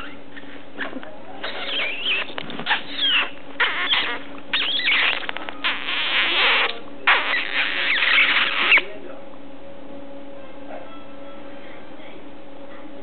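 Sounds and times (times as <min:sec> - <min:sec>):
puppy squeaks: 0:00.0 - 0:00.2, 0:00.8 - 0:08.9
scratchy rubbing on microphone: 0:00.8 - 0:08.9.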